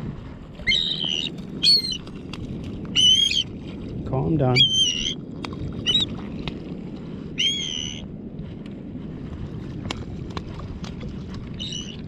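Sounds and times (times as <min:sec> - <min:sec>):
bird distress call: 0:00.6 - 0:02.0, 0:03.0 - 0:03.4, 0:04.6 - 0:05.2, 0:07.4 - 0:08.0.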